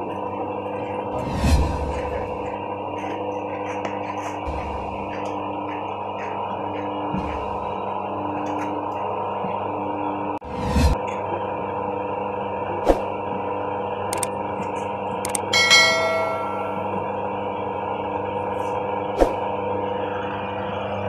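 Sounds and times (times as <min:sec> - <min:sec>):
machine humming: 0:00.0 - 0:21.0
sharp metal knocks: 0:15.3 - 0:16.9
ringing metallic clang: 0:15.5 - 0:16.9.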